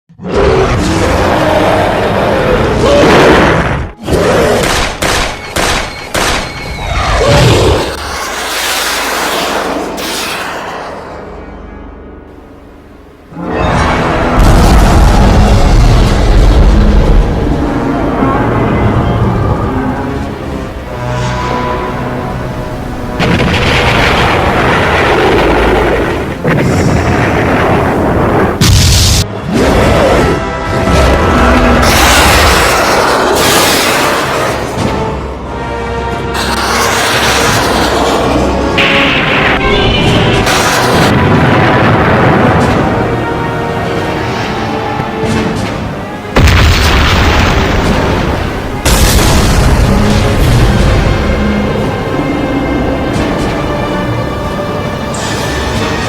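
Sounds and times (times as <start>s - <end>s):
monster roaring: 0.2s - 4.8s, 6.9s - 11.3s, 23.2s - 28.6s, 29.4s - 35.0s, 36.3s - 43.1s
film score notes: 0.2s - 56.0s
booming impacts: 13.4s - 20.0s, 20.7s - 35.4s, 36.5s - 56.0s
heavy explosions rumbling: 13.8s - 20.0s, 22.4s - 35.2s, 36.5s - 56.0s.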